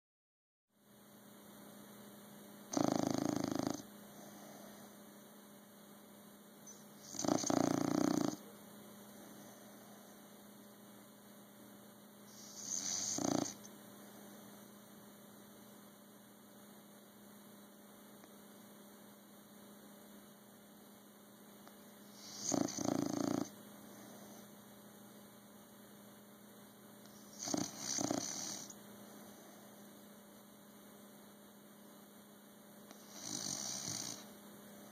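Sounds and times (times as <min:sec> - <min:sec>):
steady electrical hum: 0:00.8 - 0:34.9
dog snoring: 0:02.7 - 0:05.0, 0:06.7 - 0:08.5, 0:12.3 - 0:14.4, 0:22.0 - 0:24.5, 0:27.0 - 0:29.9, 0:32.9 - 0:34.9.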